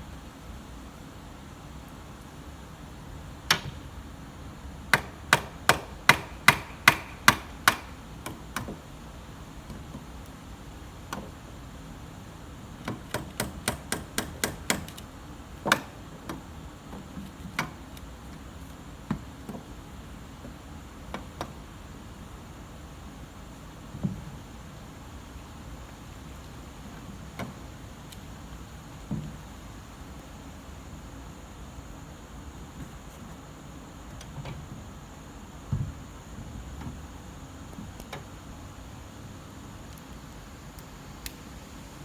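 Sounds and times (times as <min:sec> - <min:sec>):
hand hammer blows: 0:05.0 - 0:08.0.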